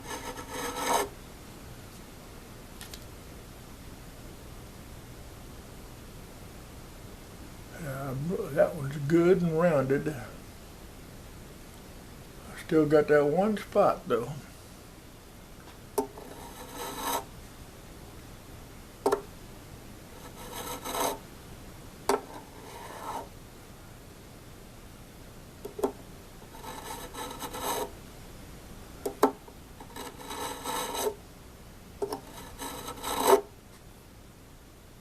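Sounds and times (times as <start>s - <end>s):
file rasping on metal fret: 0.0s - 1.1s, 16.2s - 17.3s, 20.2s - 21.2s, 22.3s - 23.3s, 26.5s - 27.9s, 29.8s - 31.2s, 32.1s - 33.5s.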